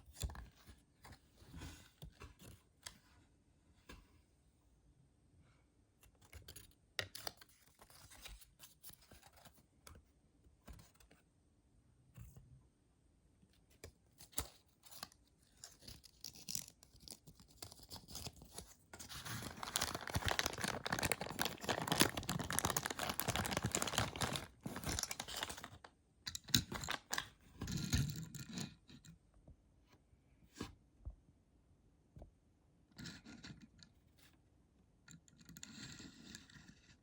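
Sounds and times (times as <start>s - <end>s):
small clicks and scrapes: 13.7s - 19.6s, 35.1s - 37.0s
packaging crinkling and tearing: 15.7s - 25.9s, 26.6s - 27.3s.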